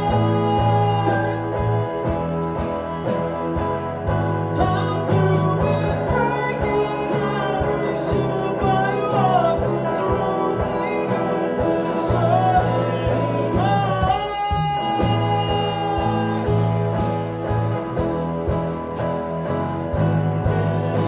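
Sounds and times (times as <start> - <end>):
person singing: 0.0 - 2.1, 4.2 - 16.7
bass notes: 0.0 - 21.0
guitar: 0.0 - 21.0.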